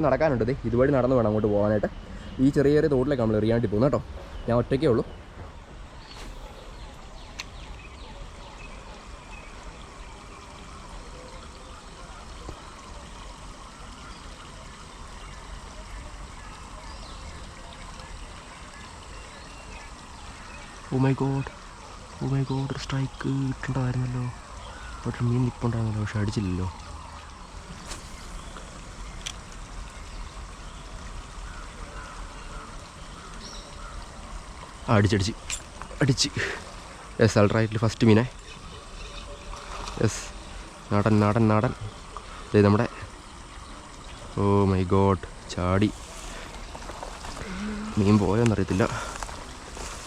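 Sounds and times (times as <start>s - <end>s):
stream water trickling: 0.0s - 50.0s
faint clicks: 26.3s - 30.6s.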